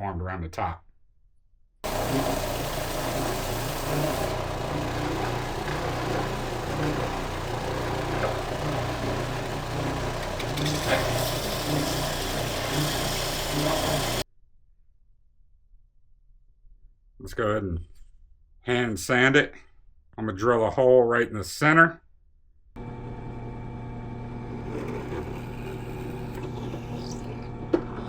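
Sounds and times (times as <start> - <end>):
electric sander grinding wood: 1.8 - 14.2, 22.8 - 28.0.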